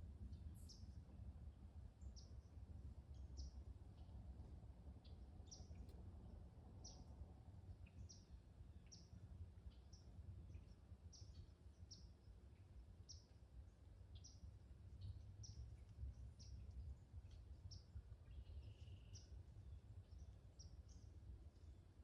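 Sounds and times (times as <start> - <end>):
low steady rumble: 0.0 - 22.0
small bird chirping: 5.0 - 6.0, 7.8 - 13.4, 14.1 - 21.8.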